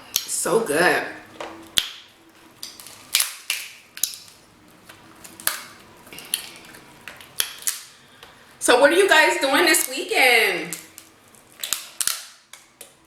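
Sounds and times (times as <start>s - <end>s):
crab shells cracking: 1.4s - 8.4s, 10.7s - 13.0s.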